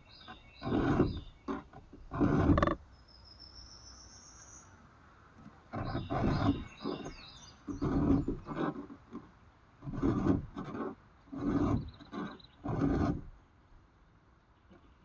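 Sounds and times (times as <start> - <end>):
file rasping on chainsaw chain: 0.2 - 2.8, 5.7 - 8.9, 9.8 - 13.3
faint bird chirps: 3.0 - 4.8.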